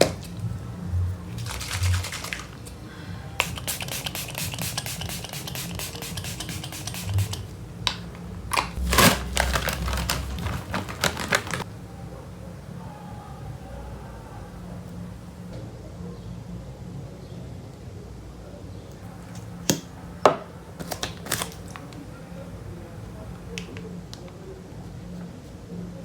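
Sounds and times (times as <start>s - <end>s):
rustling: 5.2s - 11.7s.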